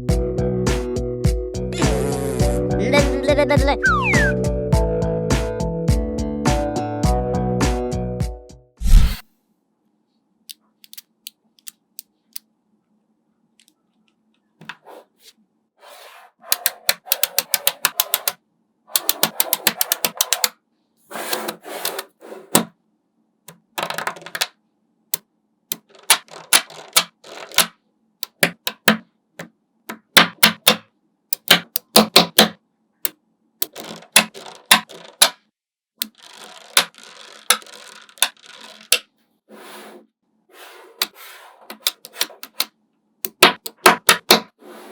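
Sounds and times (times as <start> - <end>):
magnet balls clicking together: 33.6 - 35.4, 36.0 - 39.0.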